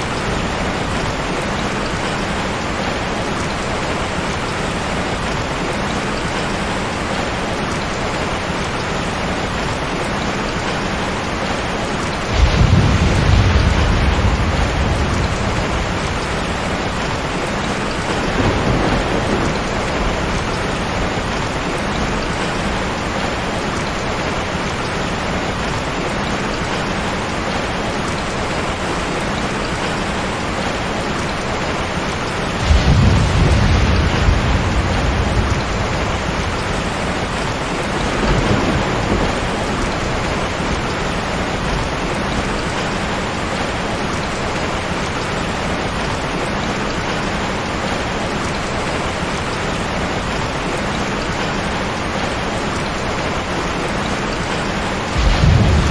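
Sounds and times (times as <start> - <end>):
heavy rain falling: 0.0 - 55.9
thunder rumbling: 10.5 - 25.8, 31.3 - 46.4, 51.2 - 55.9.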